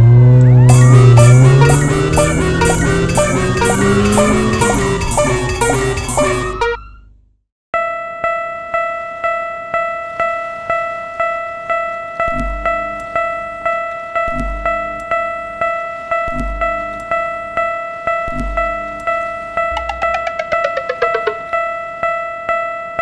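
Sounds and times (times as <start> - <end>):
deep beat and low chord: 0.7 - 6.8, 19.6 - 21.5
railroad crossing bell ringing: 0.7 - 6.8.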